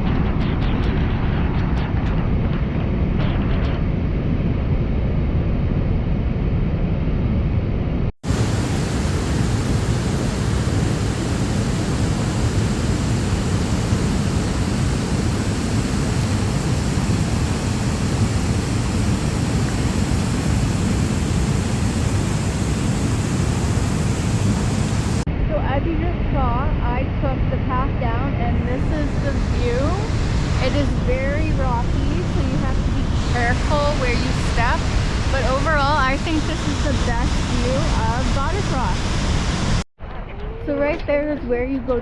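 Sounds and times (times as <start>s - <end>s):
waterfall roaring: 8.2s - 25.3s.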